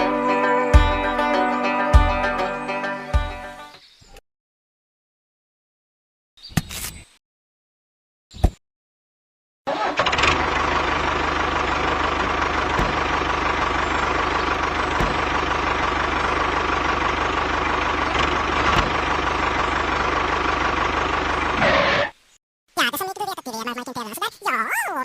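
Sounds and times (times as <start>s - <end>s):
engine idling with knocking: 9.8s - 21.9s.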